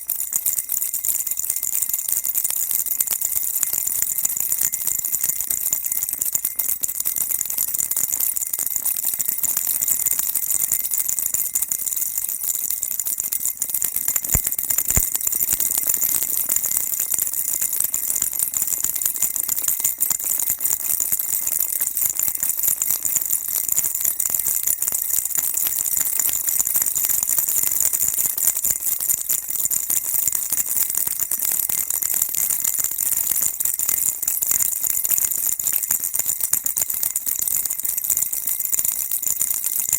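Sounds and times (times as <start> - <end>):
baby rattle shaken: 0.0 - 0.6, 14.1 - 16.2.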